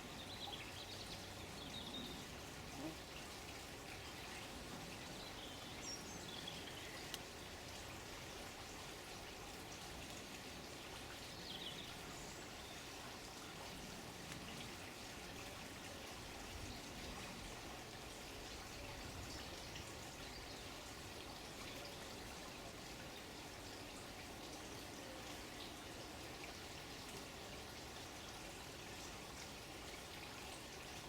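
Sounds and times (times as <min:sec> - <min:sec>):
running water: 0:00.0 - 0:31.0.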